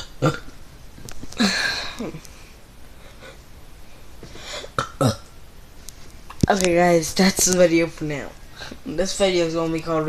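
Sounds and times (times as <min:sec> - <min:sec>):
child forcing a burp: 0:00.0 - 0:00.6, 0:04.5 - 0:05.3.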